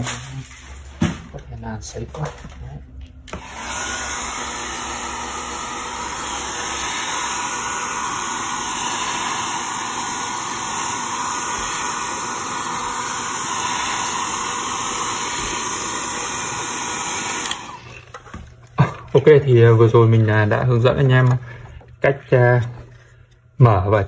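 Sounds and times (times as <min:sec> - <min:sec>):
hot-air dryer blowing: 0:03.3 - 0:18.1.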